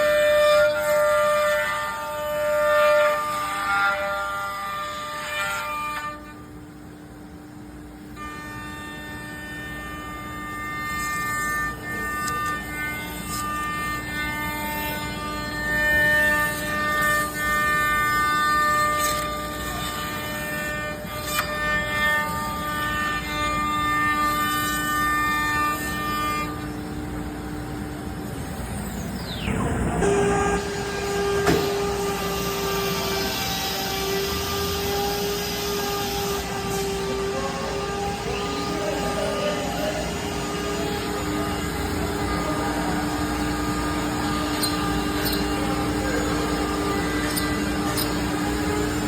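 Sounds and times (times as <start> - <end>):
stepper motors whining: 9.1 - 49.0
low steady hum: 9.5 - 32.4
router spindle running: 29.4 - 49.0.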